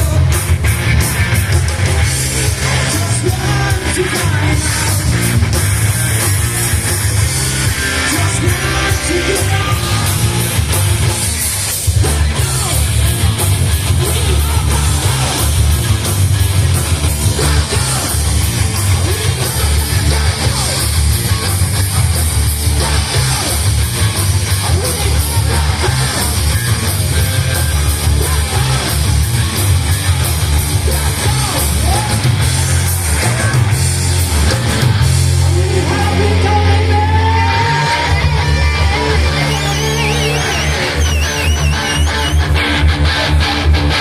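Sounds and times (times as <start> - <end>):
bass guitar: 0.0 - 44.0
distorted electric guitars: 0.0 - 44.0
driving drum beat: 0.0 - 44.0
yelled vocals: 0.0 - 44.0.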